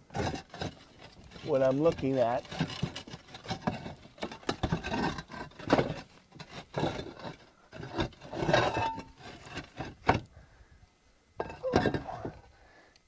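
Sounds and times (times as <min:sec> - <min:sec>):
roof tiles scraping together: 0:00.1 - 0:10.2.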